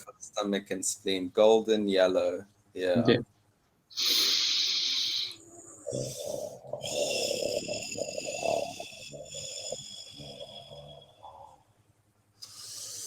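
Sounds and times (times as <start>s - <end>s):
breath hissing out: 3.9s - 11.3s, 12.4s - 13.0s.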